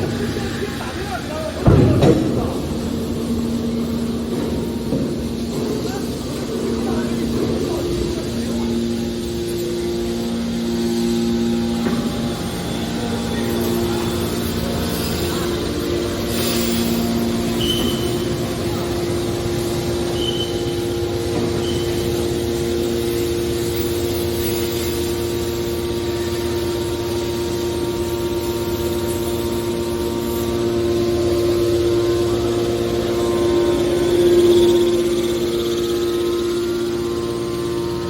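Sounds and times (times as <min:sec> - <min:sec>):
baler machine drone: 0:00.0 - 0:38.0
high squeaks: 0:16.2 - 0:19.1, 0:19.8 - 0:22.4.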